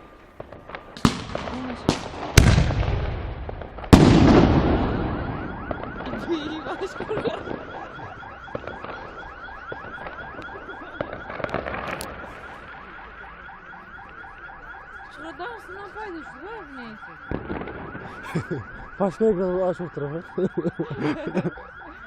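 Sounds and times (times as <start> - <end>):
firework cracks: 0.0 - 13.0
fireworks explosions: 0.0 - 22.0
car alarm chirping: 4.0 - 22.0.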